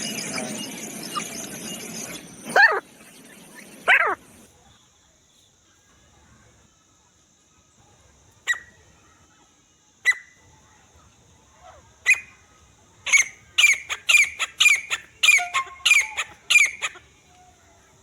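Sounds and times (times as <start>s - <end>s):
bird harsh calls: 0.0s - 4.4s, 13.1s - 17.0s.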